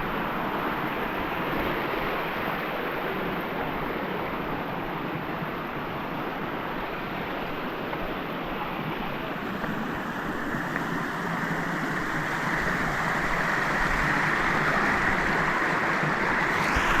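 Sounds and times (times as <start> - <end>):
waterfall rushing over rock: 10.0 - 17.0.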